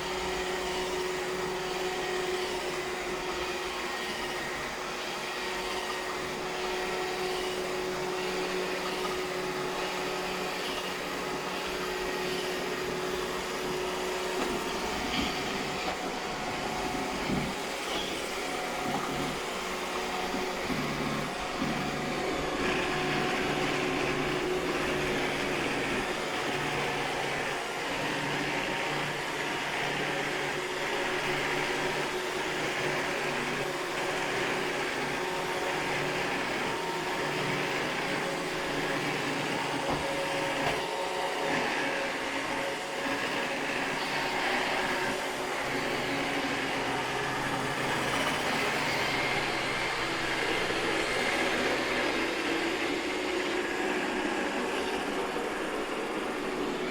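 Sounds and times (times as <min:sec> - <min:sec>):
robot vacuum whirring: 0:00.0 - 0:56.9.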